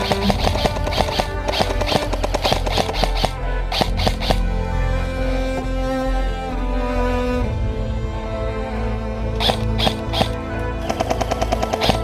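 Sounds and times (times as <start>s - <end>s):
sharp clicks: 0.0s - 4.4s, 9.4s - 12.0s
background music with held notes: 0.0s - 12.0s.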